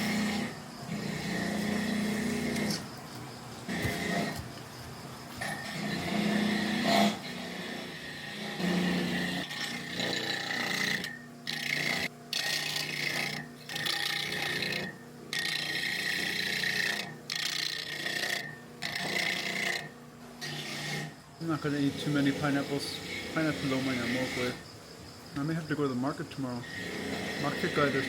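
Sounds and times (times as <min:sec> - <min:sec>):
rasping scraping strokes: 0:00.0 - 0:02.9, 0:26.6 - 0:28.0
steady low hum: 0:00.0 - 0:28.0.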